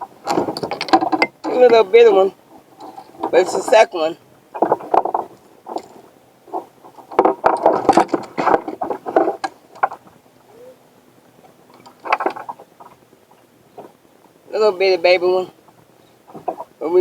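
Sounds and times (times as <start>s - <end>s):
knocks and scrapes on plastic boat: 4.5s - 10.2s, 16.2s - 16.7s.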